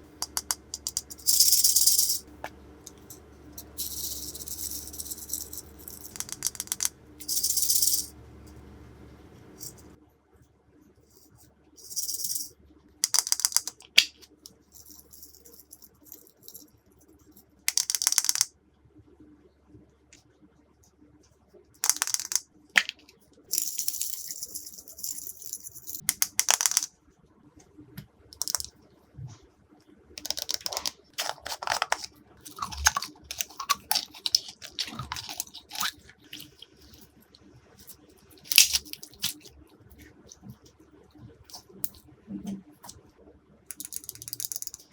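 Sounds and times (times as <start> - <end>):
slime crackling and clicking: 30.2 - 36.6, 38.4 - 39.5.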